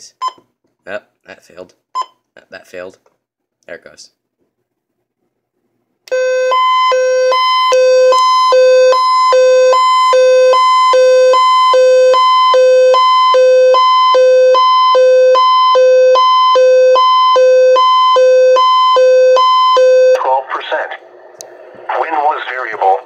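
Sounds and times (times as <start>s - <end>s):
two-tone siren alarm: 6.1s - 20.2s.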